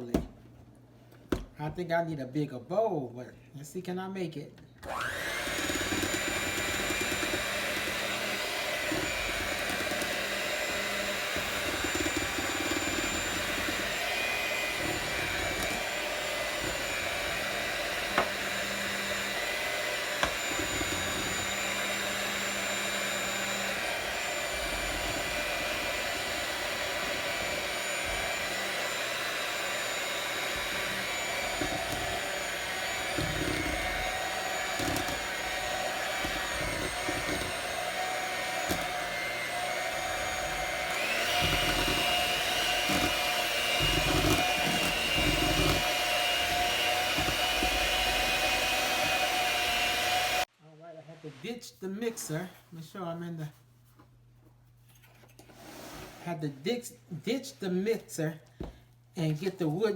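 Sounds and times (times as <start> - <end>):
electric mixer motor whining: 4.8 - 50.5.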